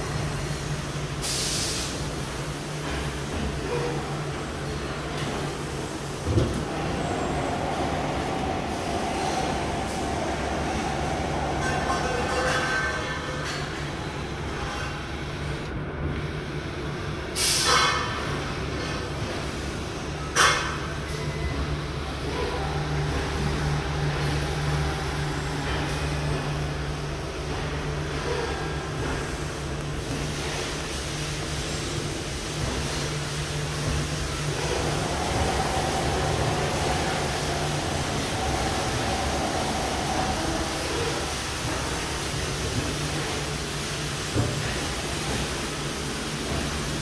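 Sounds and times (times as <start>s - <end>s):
industrial machinery running: 0.0s - 47.0s
steady machine whine: 4.3s - 15.0s, 32.0s - 43.3s.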